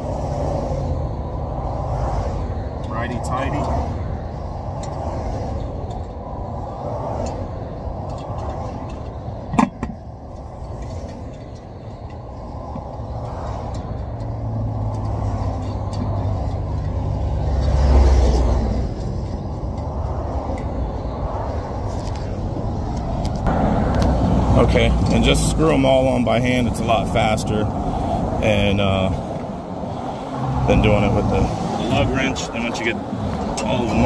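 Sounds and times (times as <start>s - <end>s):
highway traffic rumble: 0.0s - 34.0s
heavy vehicle passing: 12.2s - 34.0s.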